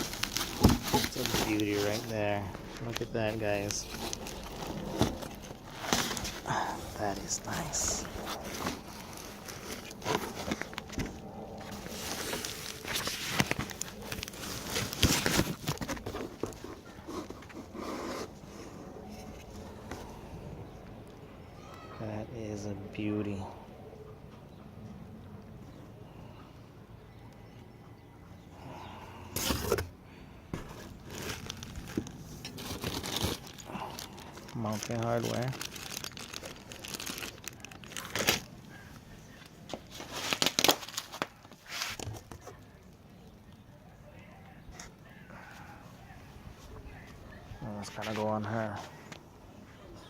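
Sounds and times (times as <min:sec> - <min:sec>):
packaging rustling: 0:00.0 - 0:18.4, 0:30.5 - 0:42.5.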